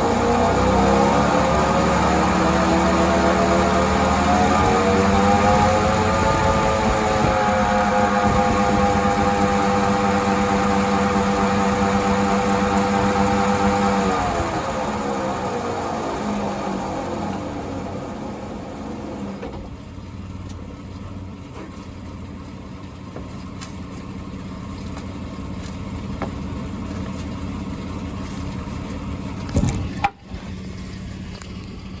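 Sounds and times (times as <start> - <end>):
wheel bearing drone: 0.0 - 32.0.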